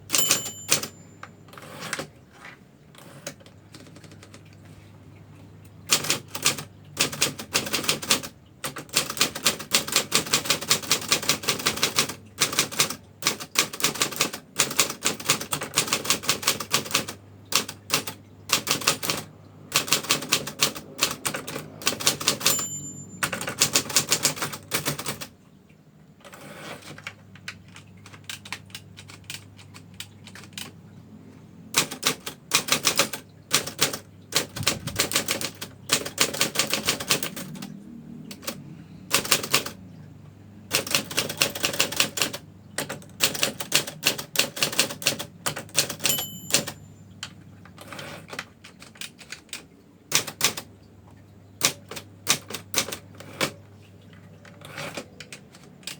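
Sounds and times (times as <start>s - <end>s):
typewriter keys striking: 0.0s - 2.2s, 5.9s - 25.3s, 26.2s - 30.8s, 31.8s - 37.7s, 38.3s - 39.8s, 40.7s - 50.7s, 51.6s - 53.6s, 54.4s - 55.9s
typewriter bell ding: 0.1s - 2.1s, 21.2s - 25.2s, 45.8s - 47.1s.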